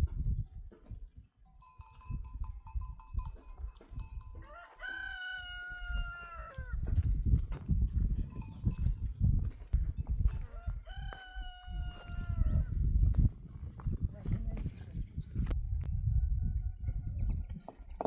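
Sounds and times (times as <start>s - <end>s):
rooster crowing: 4.4s - 6.8s, 10.4s - 12.8s.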